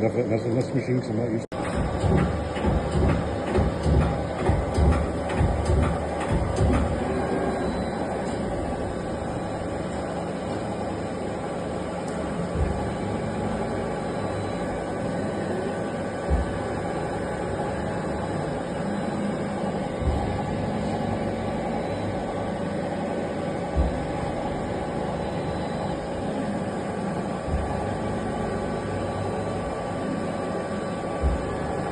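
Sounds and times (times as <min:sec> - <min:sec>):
low thump: 0:16.3 - 0:16.6.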